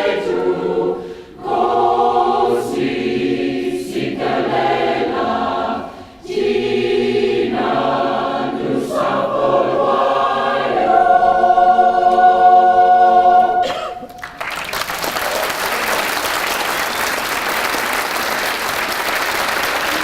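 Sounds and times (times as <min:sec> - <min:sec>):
choir singing: 0:00.0 - 0:14.0.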